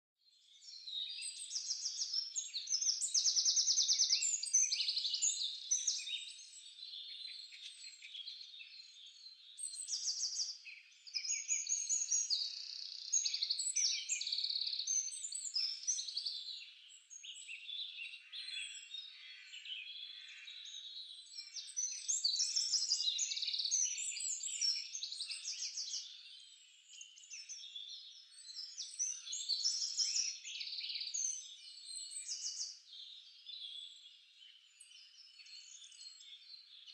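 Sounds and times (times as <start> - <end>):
birds chirping and trilling: 0.3 - 36.9.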